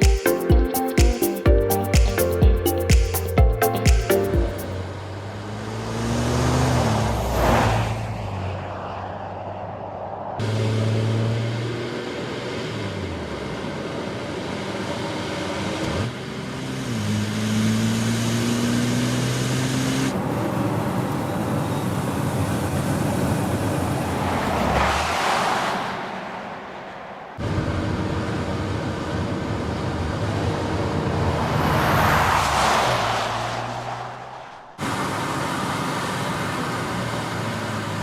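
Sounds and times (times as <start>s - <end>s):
car engine accelerating: 4.5s - 9.7s, 10.4s - 26.6s, 27.4s - 38.0s
rushing noise: 30.4s - 35.9s.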